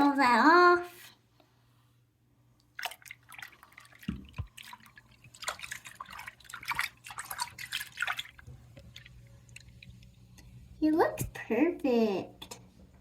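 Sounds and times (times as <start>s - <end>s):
water splashing in a sink: 2.6s - 11.4s.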